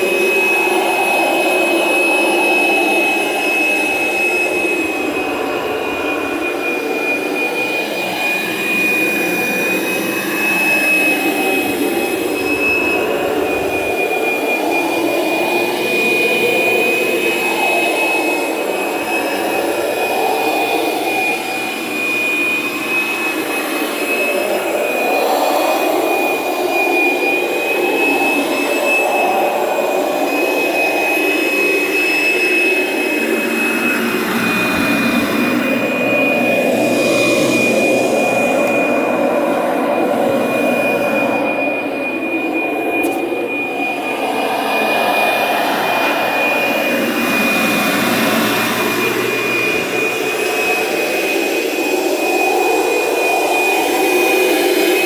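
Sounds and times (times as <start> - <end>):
rushing airflow: 0.0 - 23.0, 33.2 - 52.0
vacuum motor whine: 0.0 - 55.0.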